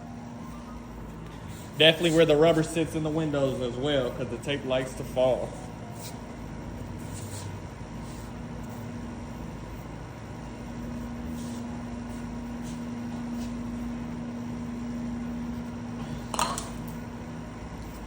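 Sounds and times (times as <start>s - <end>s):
machine hum: 0.0s - 18.0s.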